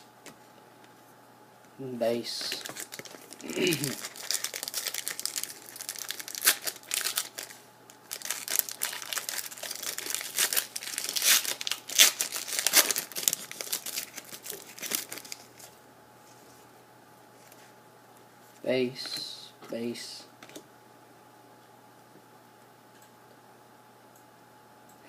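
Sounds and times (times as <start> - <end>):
wrapper crinkling and tearing: 2.4 - 15.7.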